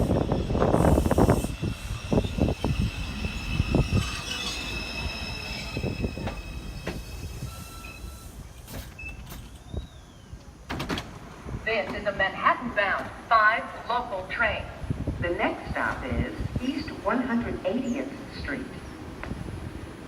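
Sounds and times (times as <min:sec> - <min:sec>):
high wheel squeal: 0:00.0 - 0:10.3
subway train slowing: 0:00.0 - 0:20.0.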